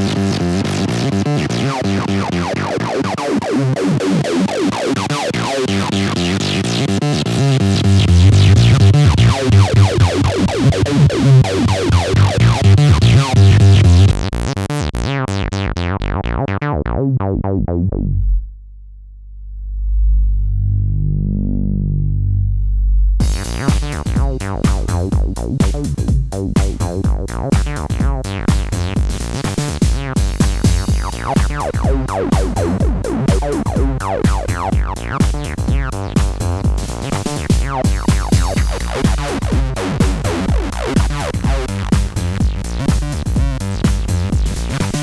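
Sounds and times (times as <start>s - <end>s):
distorted synthesizer sequence: 0.0s - 15.1s, 20.5s - 45.0s
low held bass note: 7.7s - 14.5s, 16.0s - 29.4s, 30.6s - 43.6s.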